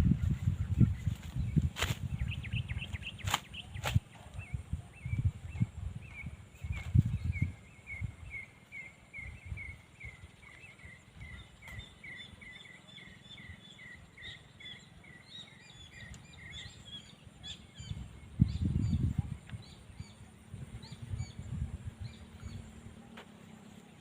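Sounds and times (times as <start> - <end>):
wind buffeting microphone: 0.0 - 12.1, 15.9 - 23.0
bird chirping: 0.1 - 24.0.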